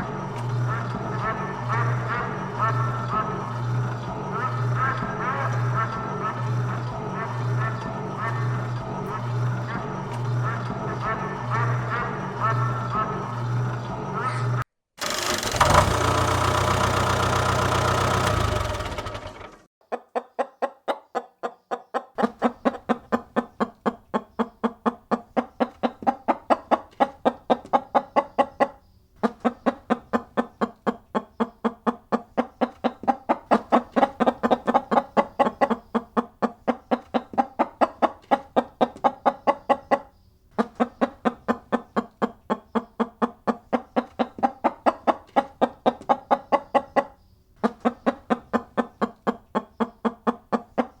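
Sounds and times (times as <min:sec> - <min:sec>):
chicken clucking: 0:00.0 - 0:14.6, 0:19.8 - 0:51.0
loud sound cutting off: 0:00.0 - 0:19.7.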